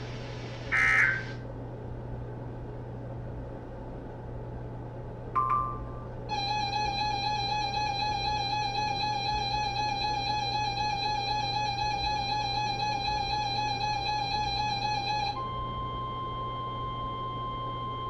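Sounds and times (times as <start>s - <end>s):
buzzy electronic alarm tone: 0.7s - 1.3s, 6.3s - 18.0s
steady pure alarm tone: 0.7s - 1.4s, 5.4s - 18.0s.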